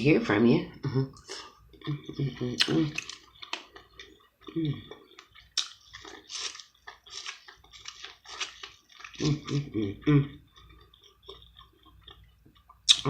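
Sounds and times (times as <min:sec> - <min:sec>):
crunchy chewing: 0:02.6 - 0:09.7, 0:10.4 - 0:13.0
person humming: 0:09.3 - 0:10.4.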